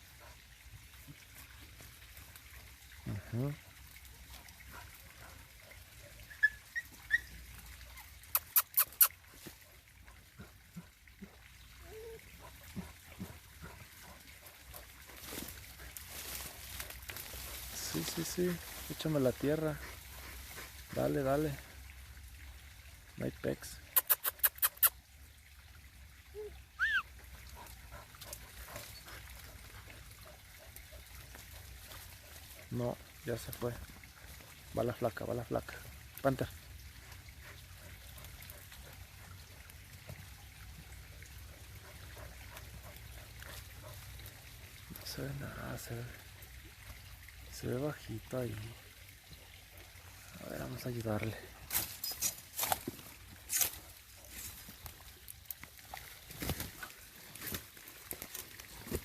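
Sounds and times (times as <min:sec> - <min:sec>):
dogs scratching at earth: 0:12.4 - 0:21.1, 0:27.5 - 0:34.4, 0:50.7 - 0:59.0.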